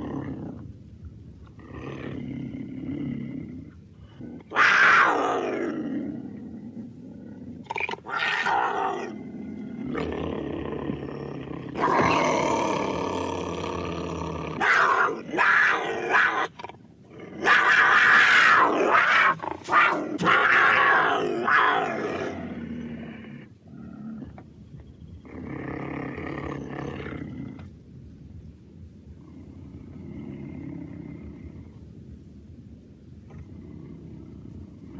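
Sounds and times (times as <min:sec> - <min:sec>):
cougar calling: 0:04.4 - 0:06.1, 0:07.4 - 0:09.2, 0:14.5 - 0:24.4.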